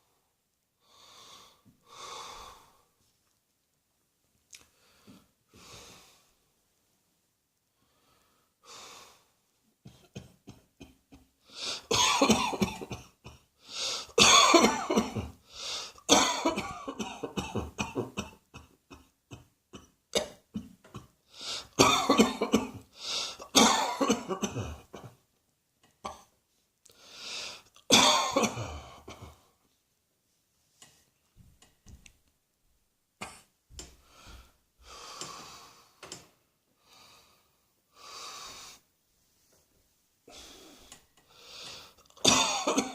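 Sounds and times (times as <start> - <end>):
breathing: 0.8 - 3.0, 4.7 - 6.4, 7.8 - 9.4, 11.4 - 11.9, 13.6 - 14.2, 15.4 - 16.0, 21.3 - 21.8, 22.9 - 23.5, 26.9 - 27.7, 34.0 - 38.9, 40.3 - 42.1
person coughing: 9.9 - 13.5, 14.1 - 15.4, 16.1 - 21.1, 21.8 - 22.8, 23.4 - 25.2, 27.9 - 29.4, 42.2 - 42.9.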